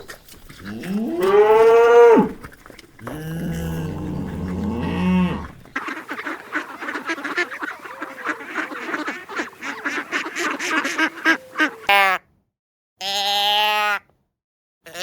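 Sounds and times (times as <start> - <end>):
waterfowl honking and quacking: 2.3 - 12.2.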